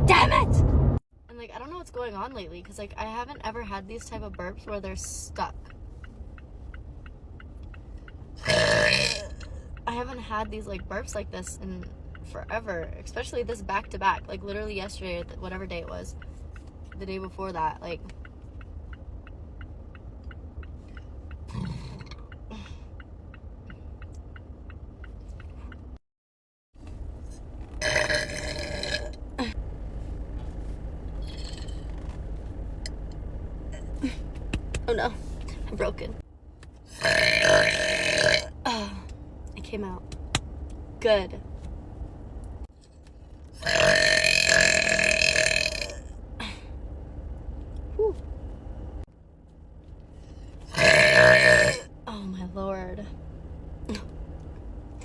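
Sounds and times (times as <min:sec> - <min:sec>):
steady low rumble: 0:00.0 - 0:26.0, 0:26.8 - 0:55.0
woman burping: 0:08.4 - 0:09.4, 0:27.8 - 0:29.6
short throaty burp: 0:21.5 - 0:22.2.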